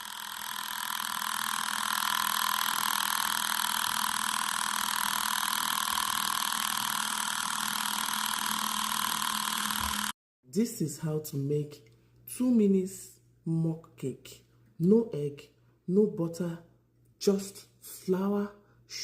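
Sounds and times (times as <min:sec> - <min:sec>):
microwave oven humming: 0:00.0 - 0:10.1.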